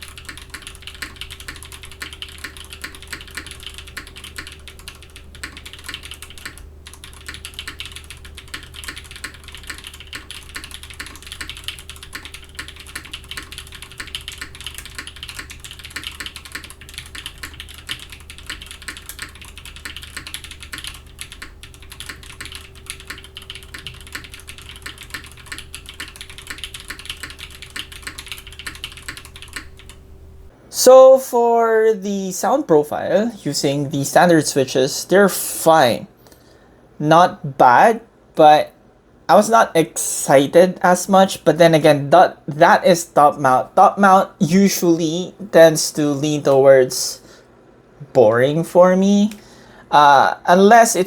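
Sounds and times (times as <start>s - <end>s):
mechanical keyboard typing: 0.0s - 30.0s.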